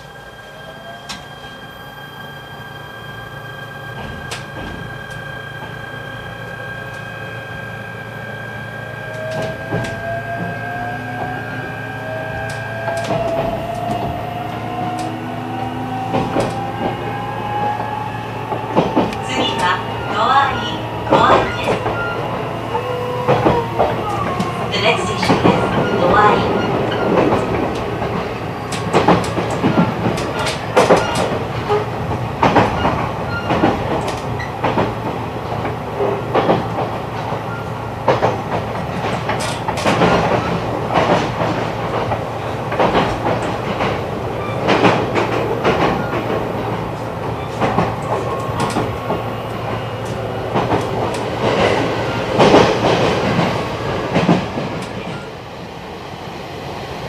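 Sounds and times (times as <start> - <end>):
train running rumble: 3.2 - 57.0
wheels clacking on track: 9.1 - 55.4.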